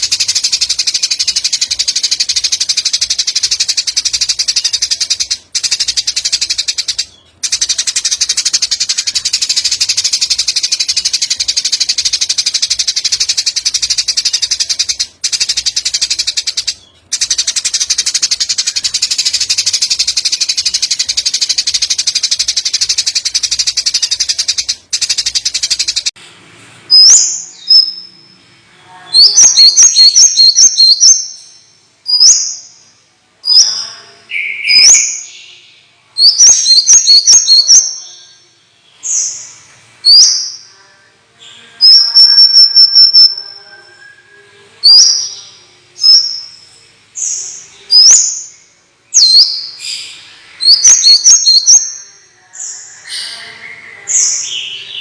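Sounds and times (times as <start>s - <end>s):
bird chirps and whistles: 0.0s - 26.1s, 29.2s - 32.7s, 34.4s - 35.3s, 36.2s - 38.1s, 40.1s - 40.6s, 41.8s - 45.3s, 46.0s - 46.6s, 47.8s - 48.5s, 49.2s - 52.1s.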